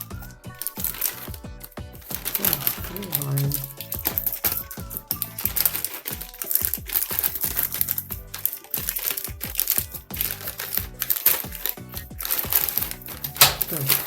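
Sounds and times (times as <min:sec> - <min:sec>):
music with beat and bass: 0:00.0 - 0:14.0.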